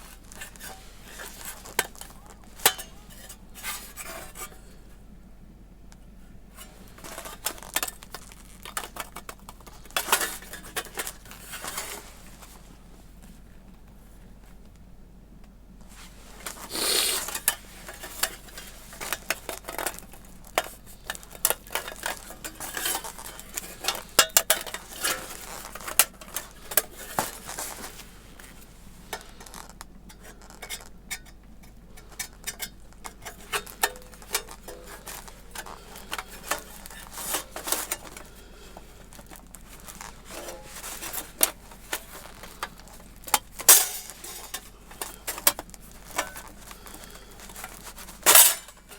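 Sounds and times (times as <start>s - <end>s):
metallic scraping rustle: 0.0s - 5.0s, 6.5s - 13.2s, 15.9s - 48.9s
metal plates clinking and rattling: 0.4s - 4.6s, 30.1s - 38.3s, 39.8s - 48.9s.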